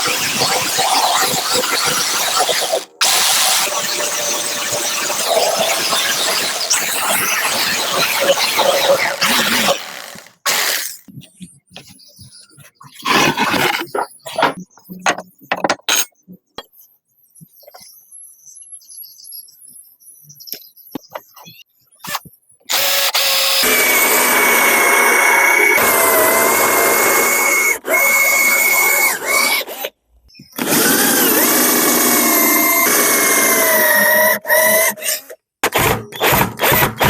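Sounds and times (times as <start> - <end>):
power tool whining: 0.0 - 11.1, 22.7 - 29.6
knocks and clicks of wood and tools: 13.6 - 16.0, 35.6 - 37.0.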